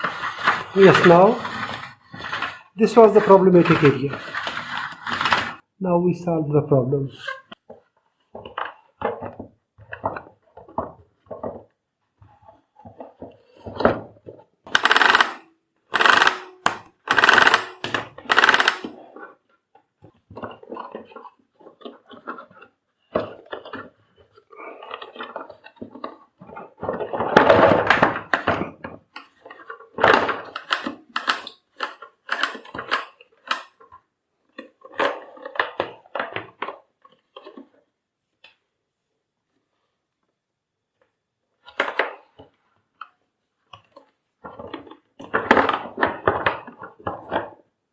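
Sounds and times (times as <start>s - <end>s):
plastic parts clicking and knocking: 7.3s - 37.8s, 41.6s - 47.8s.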